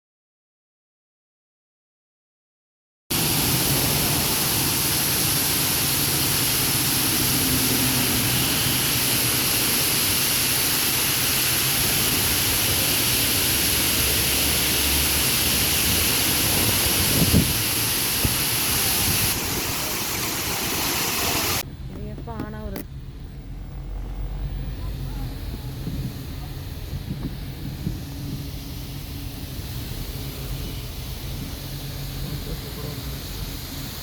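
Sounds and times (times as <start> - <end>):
waterfall rushing: 3.1 - 21.6.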